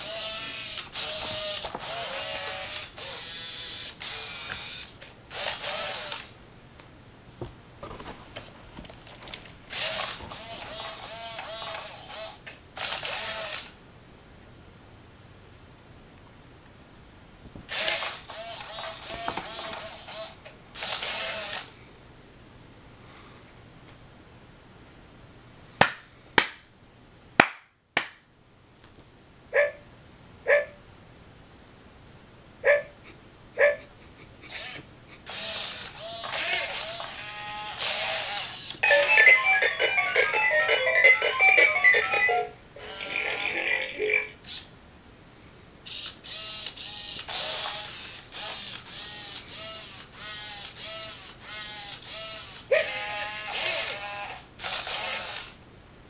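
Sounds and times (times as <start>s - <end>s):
robot dog motors whirring: 0.0s - 6.4s, 9.7s - 13.8s, 17.7s - 21.7s, 34.5s - 39.2s, 42.8s - 44.7s, 45.9s - 55.6s
beeping electronic tune: 38.8s - 42.6s.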